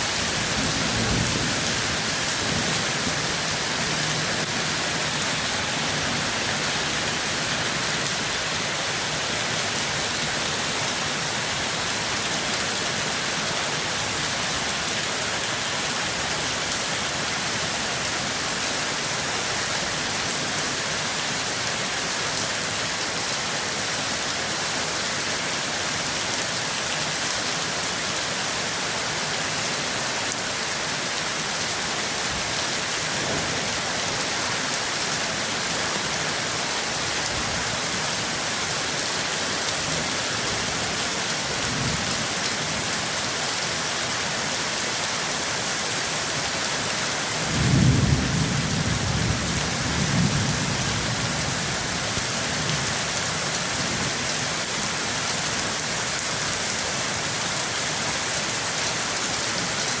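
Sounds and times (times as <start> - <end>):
steady rain falling: 0.0 - 60.0
thunder rumbling: 47.5 - 51.2.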